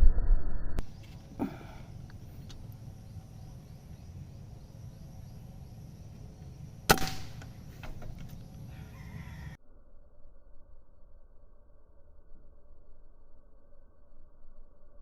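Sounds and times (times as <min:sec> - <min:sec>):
outdoor background noise: 0:00.0 - 0:15.0
air rifle shot: 0:06.9 - 0:07.5.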